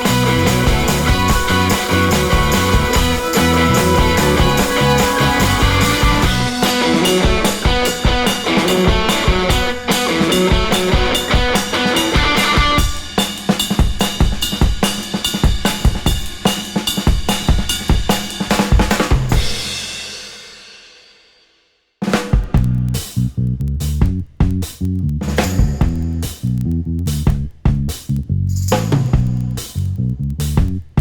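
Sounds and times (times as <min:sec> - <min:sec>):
background music with drum beat: 0:00.0 - 0:21.0, 0:22.0 - 0:31.0.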